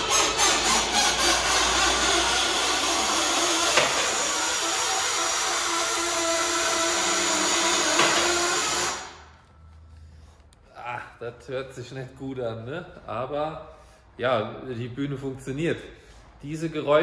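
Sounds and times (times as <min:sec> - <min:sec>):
car lift squealing: 0:00.0 - 0:09.2
hydraulic pump motor running: 0:00.0 - 0:09.4.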